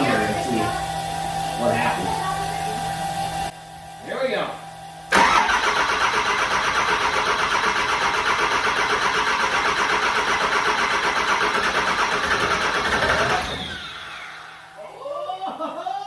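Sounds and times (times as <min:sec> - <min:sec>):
diesel engine turning over: 0:05.0 - 0:14.8.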